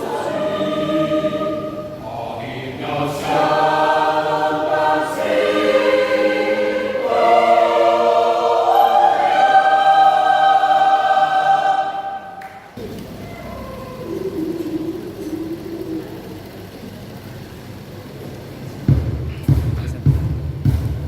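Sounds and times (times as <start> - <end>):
choir singing in harmony: 0.0 - 12.8.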